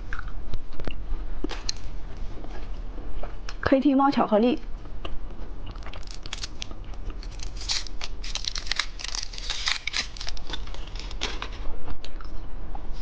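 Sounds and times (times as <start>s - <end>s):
plastic packaging crinkling: 5.8s - 11.6s.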